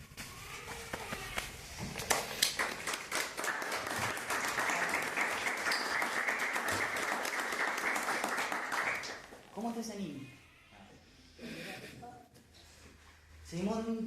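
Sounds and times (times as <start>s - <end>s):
audience applauding: 1.1s - 9.5s.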